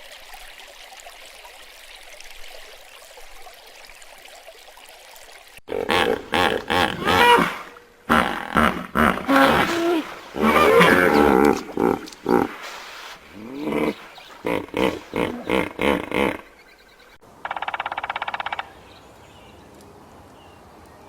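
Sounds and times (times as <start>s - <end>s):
animal cries bending in pitch: 6.9s - 15.7s.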